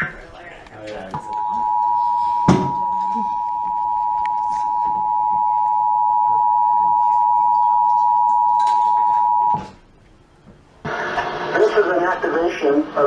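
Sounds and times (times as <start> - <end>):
two-tone alert signal: 1.2 - 9.6.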